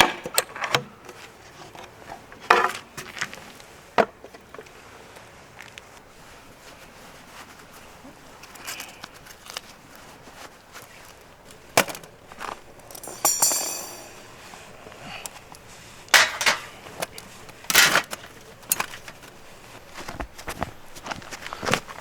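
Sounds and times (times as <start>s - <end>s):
sharp knocks and clatters: 12.8s - 14.4s, 16.2s - 16.8s
metallic clink: 12.8s - 14.6s, 16.2s - 16.8s.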